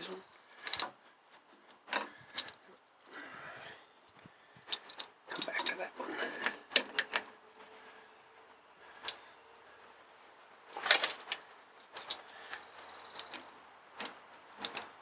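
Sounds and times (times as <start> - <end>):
hand tools clinking on metal: 4.7 - 7.3.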